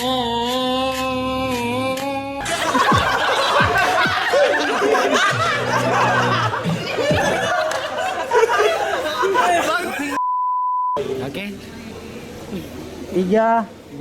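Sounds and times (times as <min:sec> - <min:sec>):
background music: 0:00.3 - 0:08.3
group of people laughing: 0:02.4 - 0:10.2.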